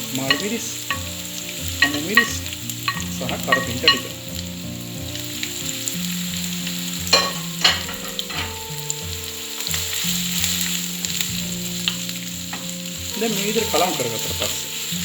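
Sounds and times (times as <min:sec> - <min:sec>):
vegetables sizzling in hot oil: 0:00.0 - 0:15.0
spoon knocking against pan: 0:00.2 - 0:04.2, 0:07.1 - 0:08.8.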